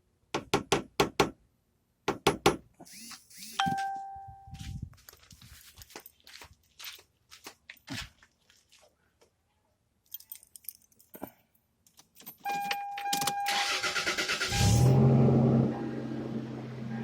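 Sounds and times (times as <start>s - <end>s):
keys jingling in ignition: 10.0s - 11.3s, 11.9s - 14.0s
in-cab warning tone: 12.4s - 14.9s
car engine cranking and starting: 13.3s - 17.0s.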